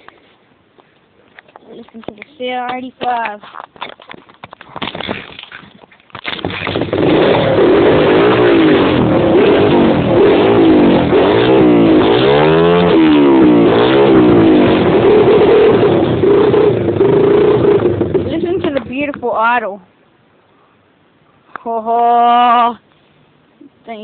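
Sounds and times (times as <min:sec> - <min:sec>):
motocross bike engine revving: 0:06.2 - 0:19.2.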